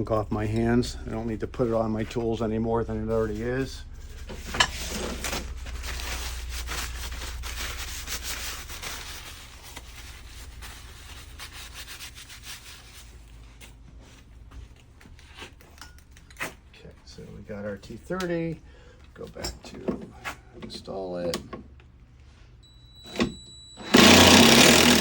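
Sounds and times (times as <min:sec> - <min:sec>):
hands rubbing: 0:03.9 - 0:15.6.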